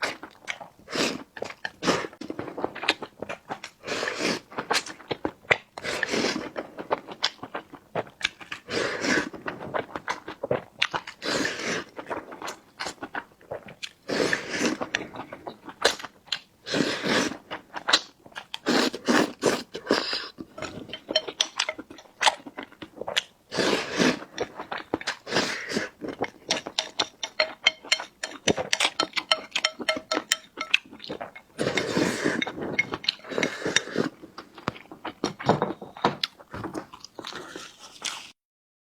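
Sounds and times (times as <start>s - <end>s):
person chewing food: 0.0s - 38.4s
wet mouth clicks: 17.9s - 22.4s, 23.2s - 34.8s.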